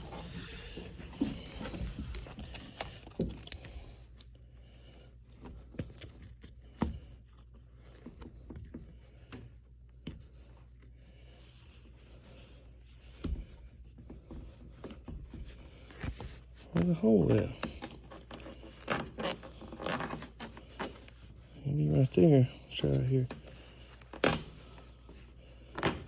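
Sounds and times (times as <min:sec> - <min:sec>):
hands scraping carpet: 0:00.0 - 0:03.6.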